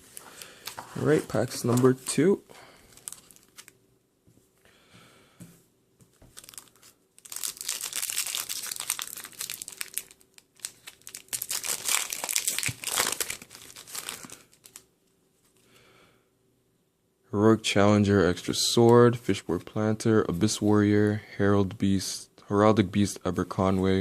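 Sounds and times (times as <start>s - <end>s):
foil wrapper crinkling and tearing: 2.8s - 3.8s, 6.3s - 14.9s.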